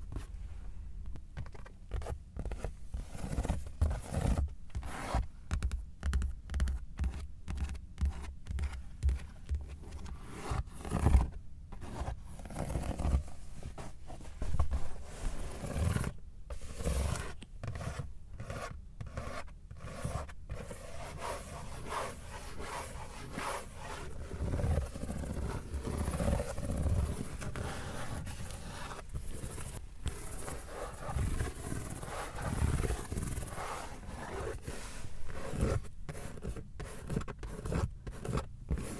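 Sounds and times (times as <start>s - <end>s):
hands rubbing car surfaces: 20.7s - 35.8s.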